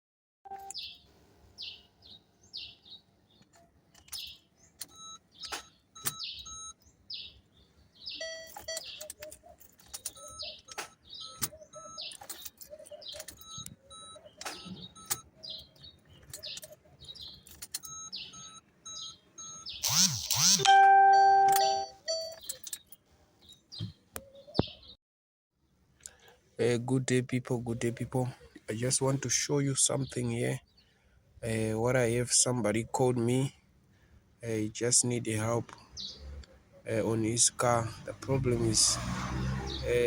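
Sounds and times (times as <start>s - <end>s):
small birds chirping: 0.5s - 20.6s, 21.7s - 25.0s, 25.6s - 38.9s
short high tones: 19.8s - 22.0s.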